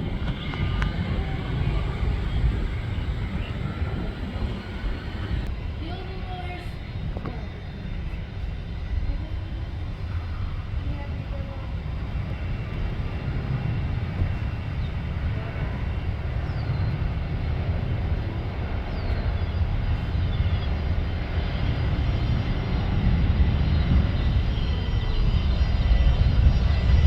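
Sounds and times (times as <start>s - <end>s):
aircraft engine low rumble: 0.0s - 27.0s.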